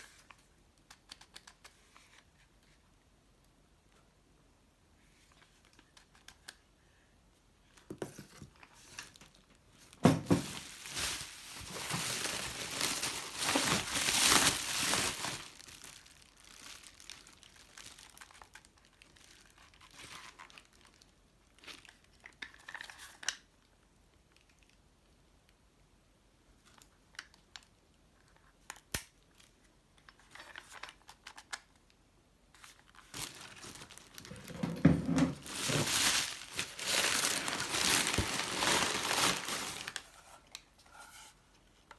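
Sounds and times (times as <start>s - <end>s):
packing material crumpling and tearing: 8.6s - 23.3s, 32.6s - 34.5s, 35.4s - 40.2s.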